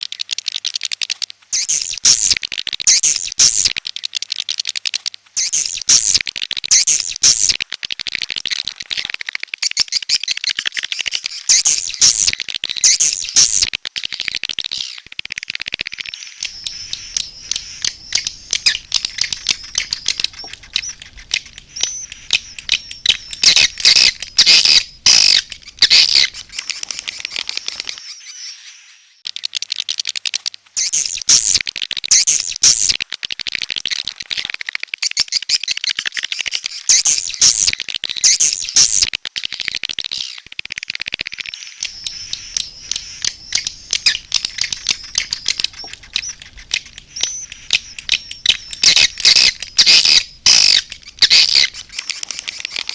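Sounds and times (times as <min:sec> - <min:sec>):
swiftlets twittering: 0:01.6 - 0:03.8, 0:05.4 - 0:07.6, 0:09.6 - 0:29.5, 0:41.4 - 0:52.9.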